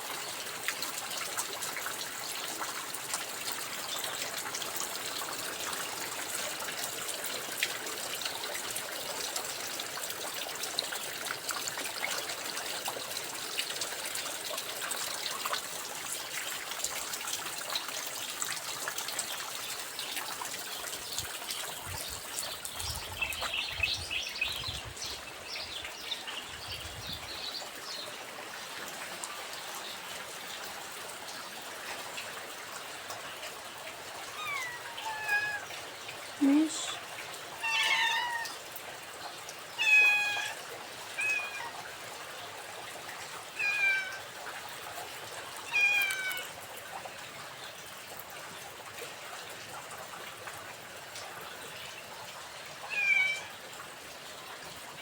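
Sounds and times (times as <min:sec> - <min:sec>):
steady rain falling: 0:00.0 - 0:55.0
water trickling: 0:00.0 - 0:55.0
raindrops ticking: 0:43.1 - 0:48.4.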